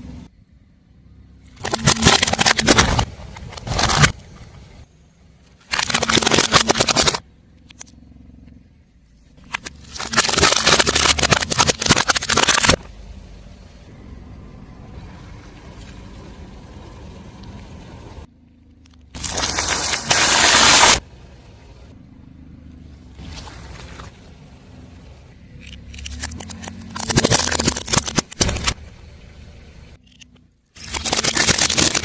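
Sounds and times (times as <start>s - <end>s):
low car rumble: 0.0s - 6.0s, 6.8s - 12.0s, 12.7s - 19.9s, 21.0s - 30.7s
car tyre crushing crunchy objects: 1.4s - 4.8s, 5.5s - 7.8s, 9.3s - 13.0s, 19.0s - 21.1s, 25.5s - 29.2s, 30.7s - 32.0s.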